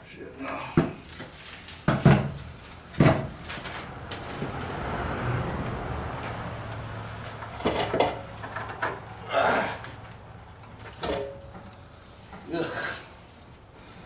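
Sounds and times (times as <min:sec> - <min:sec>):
metal knocks and scrapes: 0:01.2 - 0:09.2, 0:10.6 - 0:11.8.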